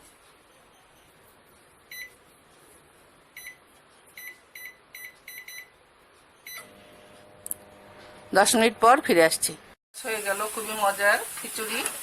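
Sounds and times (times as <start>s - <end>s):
microwave panel beeps: 1.9s - 2.2s, 3.4s - 3.6s, 4.2s - 5.8s, 6.4s - 6.9s.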